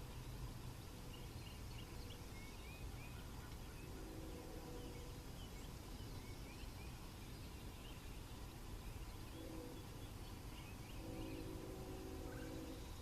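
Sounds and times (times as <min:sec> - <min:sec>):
low steady rumble: 0:00.0 - 0:13.0
small birds chirping: 0:00.0 - 0:13.0
distant locomotive air horn: 0:03.8 - 0:05.2, 0:09.3 - 0:10.2, 0:10.9 - 0:13.0.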